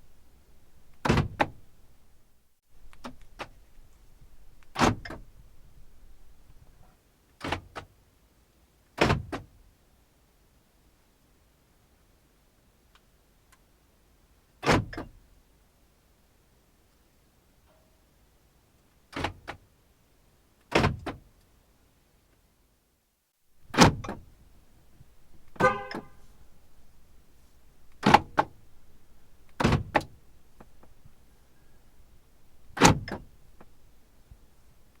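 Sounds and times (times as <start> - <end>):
car door locks clicking: 23.7 - 24.3, 25.2 - 26.2, 27.8 - 31.0, 32.7 - 33.8.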